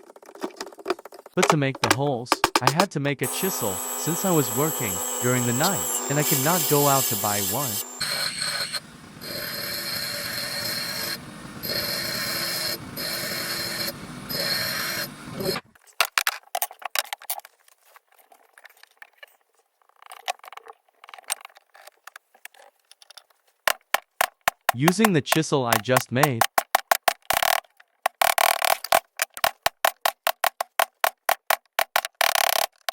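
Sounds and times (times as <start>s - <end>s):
grinder grinding with high whine: 3.2s - 15.7s.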